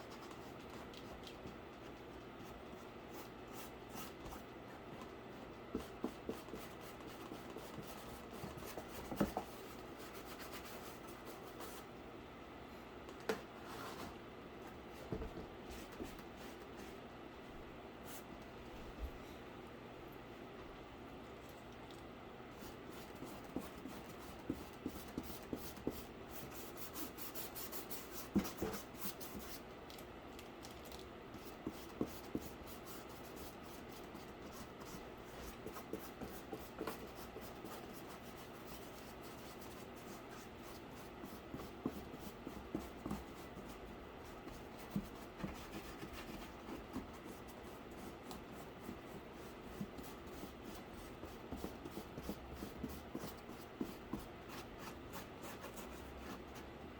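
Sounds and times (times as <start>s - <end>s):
paintbrush scratching cardboard: 5.7s - 11.8s, 22.6s - 29.6s, 31.4s - 56.6s.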